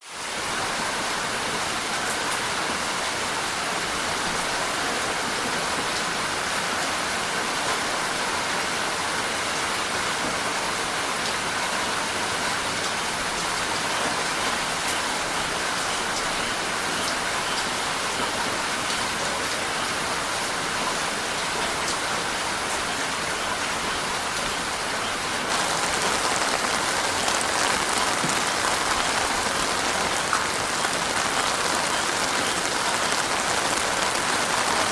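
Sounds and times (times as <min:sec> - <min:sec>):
heavy rain falling: 0:00.0 - 0:34.9
raindrop ticks: 0:25.5 - 0:34.9.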